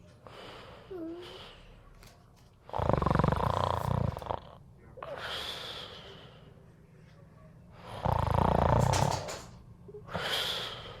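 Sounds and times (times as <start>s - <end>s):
cat snoring: 2.7s - 4.6s, 7.9s - 9.0s.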